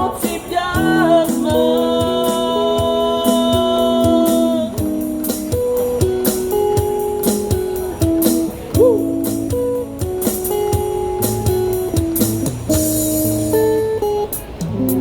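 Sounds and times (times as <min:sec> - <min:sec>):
live rock band playing: 0:00.0 - 0:15.0.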